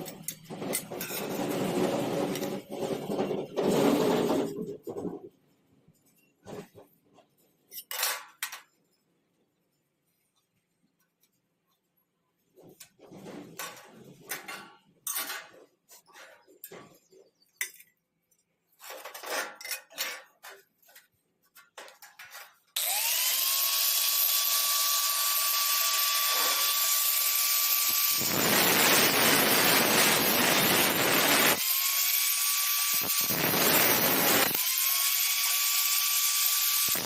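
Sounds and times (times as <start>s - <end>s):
power tool cutting metal: 22.8s - 37.0s
power tool motor whine: 22.8s - 37.0s.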